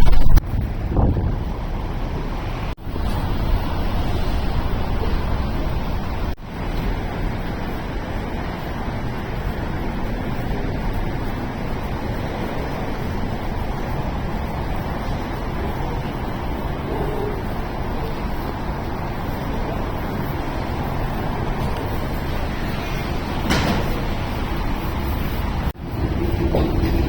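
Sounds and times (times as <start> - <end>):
harsh static noise: 0.0 - 0.6.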